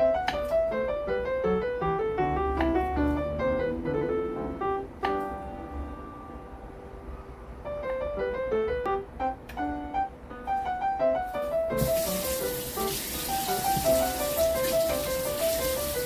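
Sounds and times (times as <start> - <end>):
piano melody: 0.0 - 16.0
steady hiss: 11.3 - 16.0.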